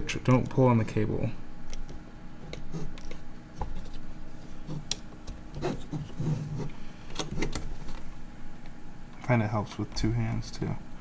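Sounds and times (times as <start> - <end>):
soft rubbing and handling: 2.3 - 10.4.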